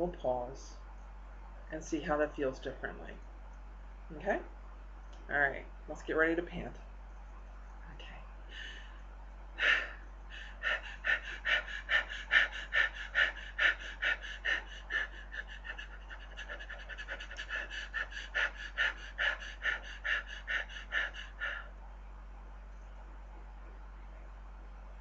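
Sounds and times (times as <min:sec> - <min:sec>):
woman panting: 0:08.5 - 0:08.9, 0:09.6 - 0:21.7.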